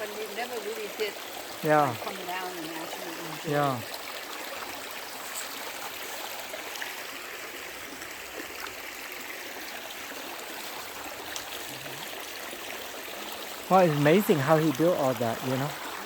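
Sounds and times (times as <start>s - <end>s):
creek water running over rocks: 0.0s - 16.0s.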